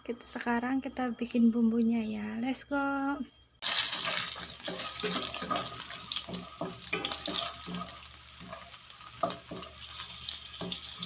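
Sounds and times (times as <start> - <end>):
shallots sizzling in hot oil: 3.6 - 11.0.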